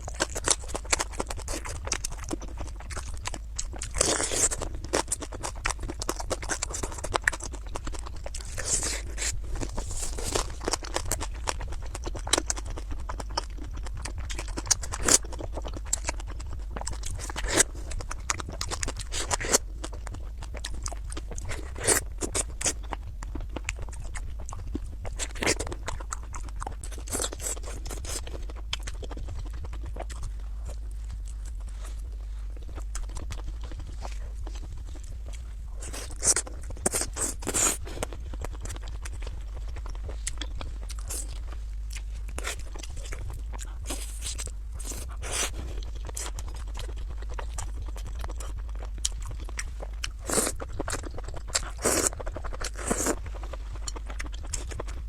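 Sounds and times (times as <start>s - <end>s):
steady low hum: 0.0s - 55.0s
wet chewing and lip smacking: 0.0s - 55.0s.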